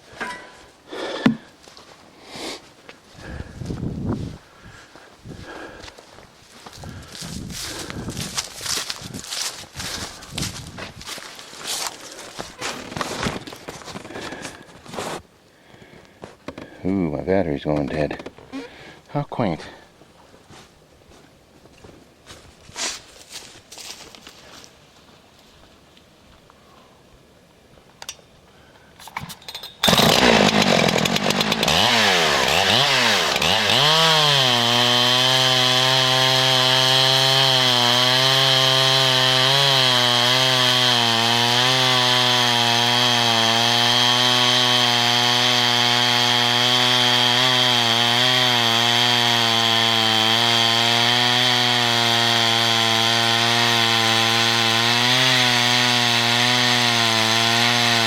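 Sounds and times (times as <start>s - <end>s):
chainsaw cutting through log: 0.9s - 1.5s, 5.3s - 5.9s, 6.6s - 14.7s, 29.1s - 58.0s.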